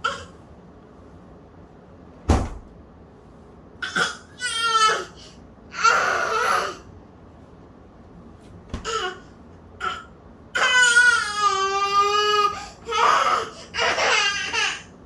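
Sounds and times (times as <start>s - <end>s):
child whining cries: 3.9s - 6.9s, 10.6s - 14.9s.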